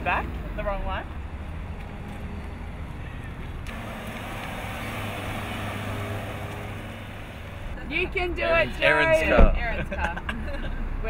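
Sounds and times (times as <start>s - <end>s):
road noise rush: 0.0s - 11.0s
car engine hum: 3.5s - 9.4s.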